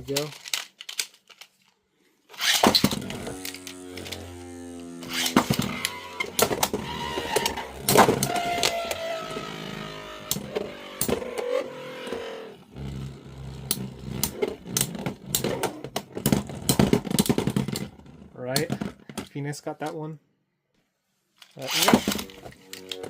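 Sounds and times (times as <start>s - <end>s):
spinning tops whirring: 2.3s - 12.7s, 21.6s - 23.0s.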